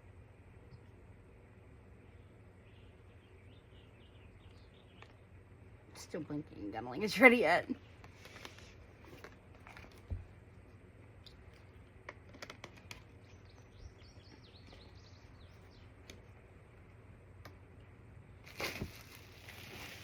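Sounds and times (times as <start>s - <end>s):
steady low hum: 0.0s - 20.0s
faint clicks and taps: 11.2s - 13.7s.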